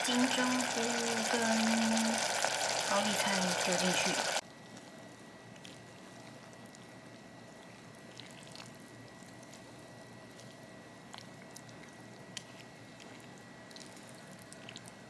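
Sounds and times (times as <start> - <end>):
faint food sizzling: 0.0 - 4.4.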